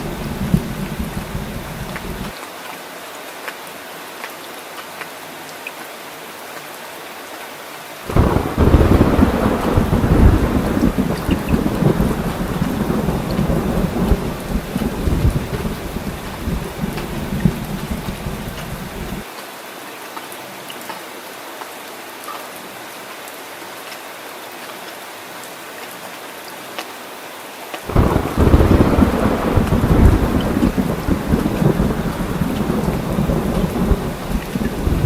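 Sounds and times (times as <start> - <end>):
rolling thunder: 0.0 - 2.3, 8.1 - 19.2, 27.9 - 35.0
heavy rain: 0.0 - 35.0.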